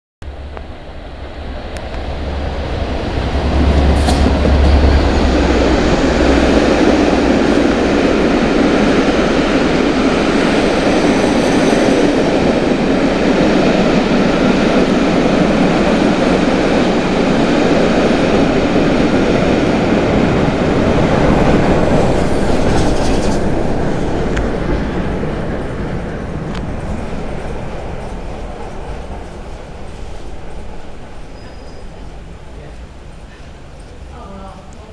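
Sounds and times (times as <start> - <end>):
deep rumble: 0.2 - 11.4
train passing at speed: 0.2 - 34.9
wheels rolling on rails: 17.8 - 32.3.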